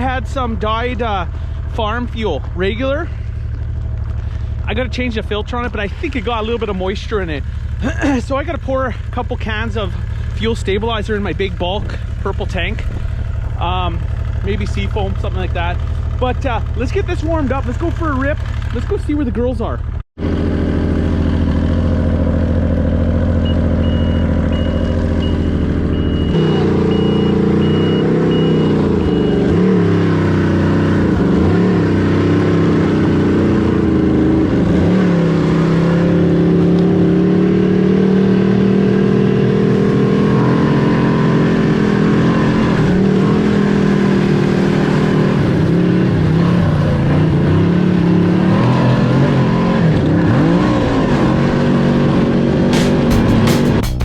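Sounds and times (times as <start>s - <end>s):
snowmobile engine: 0.0s - 19.2s, 20.2s - 54.0s
high pulsing beep: 23.4s - 29.6s.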